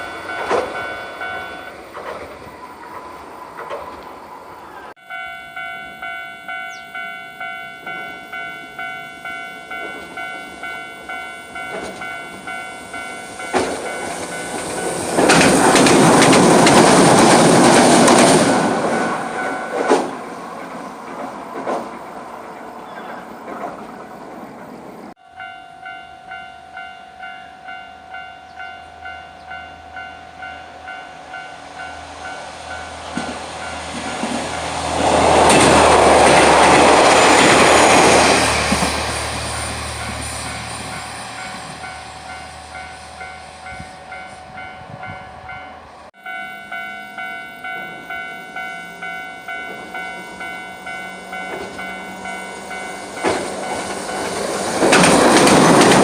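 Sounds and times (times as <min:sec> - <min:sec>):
level-crossing bell ringing: 0:00.0 - 0:01.8, 0:04.9 - 0:15.2, 0:18.5 - 0:20.1, 0:25.1 - 0:34.6, 0:37.0 - 0:54.4
tram rumbling past: 0:00.0 - 0:56.0.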